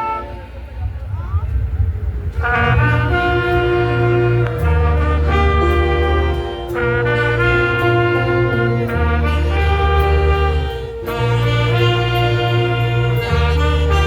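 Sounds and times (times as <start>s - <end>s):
saxophones and brass chords: 0.0s - 1.3s, 2.2s - 14.0s
strong bass line: 0.0s - 14.0s.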